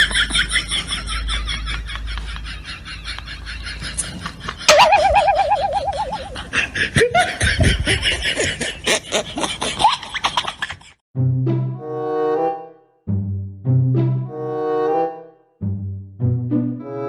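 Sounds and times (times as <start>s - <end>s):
people laughing hard: 0.0s - 4.7s, 6.2s - 11.0s
loud warbling tone: 4.7s - 6.5s.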